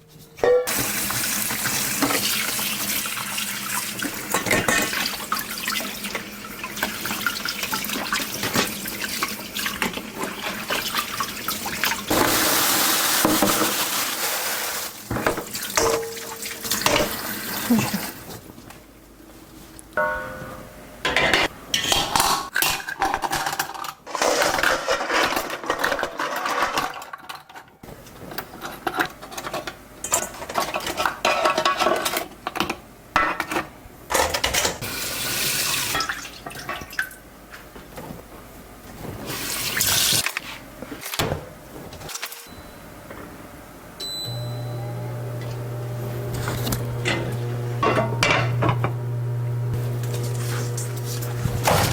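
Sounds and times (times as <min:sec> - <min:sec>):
water running into a sink: 0:00.7 - 0:18.3, 0:34.8 - 0:37.2
dishes clattering: 0:04.0 - 0:05.2, 0:15.1 - 0:17.2, 0:20.0 - 0:27.7, 0:28.5 - 0:34.8, 0:46.4 - 0:49.0.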